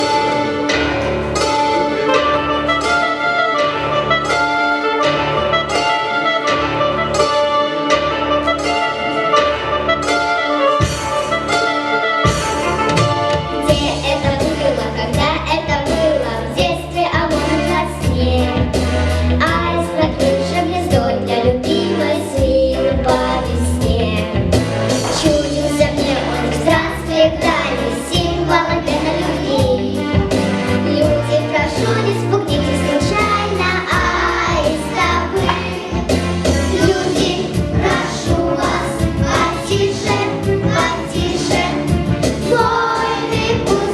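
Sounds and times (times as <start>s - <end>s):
instrumental music with steady beat: 0.0s - 43.9s
young children singing: 19.4s - 24.4s, 25.0s - 43.9s.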